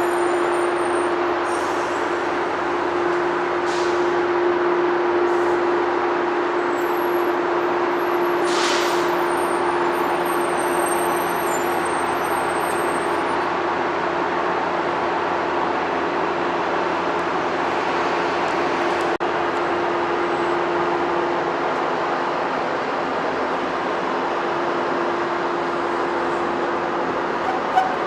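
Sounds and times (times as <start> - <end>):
train hum with held tone: 0.0 - 28.0.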